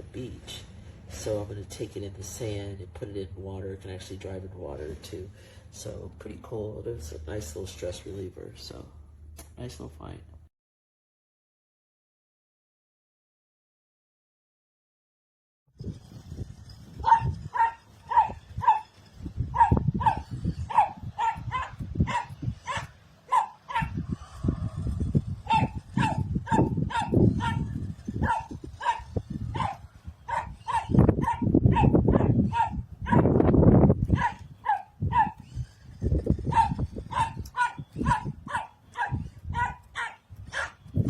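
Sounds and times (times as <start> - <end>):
dog barking: 17.0 - 18.9, 19.5 - 24.0, 25.5 - 33.4, 34.1 - 35.4, 36.5 - 40.8
low rumbling noise: 23.8 - 41.0.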